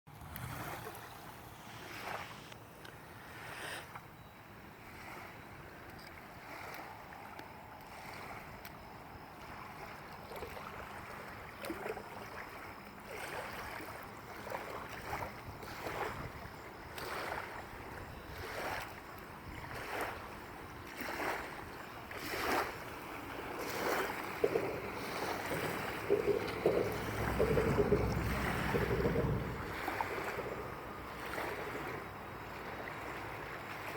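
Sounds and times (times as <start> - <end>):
small waves lapping and splashing: 0.1 - 33.9.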